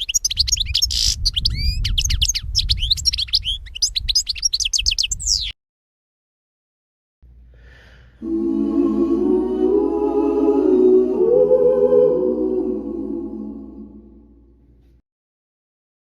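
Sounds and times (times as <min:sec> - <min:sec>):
choir singing held chords: 0:08.2 - 0:14.6.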